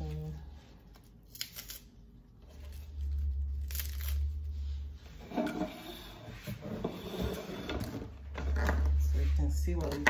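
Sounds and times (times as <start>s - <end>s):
lettuce rustling and scraping: 0.0s - 10.0s
low rumble of handling noise: 2.1s - 10.0s.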